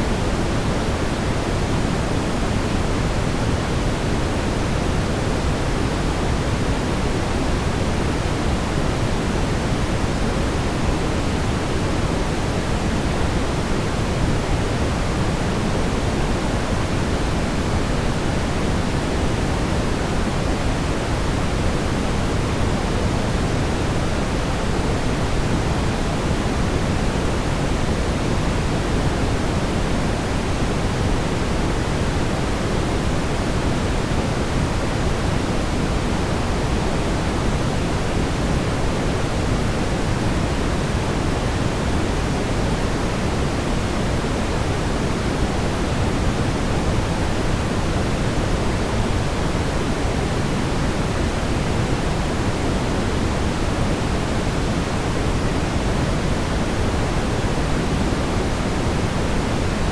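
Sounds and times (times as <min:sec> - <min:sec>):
brown noise rumbling hiss: 0:00.0 - 0:59.9.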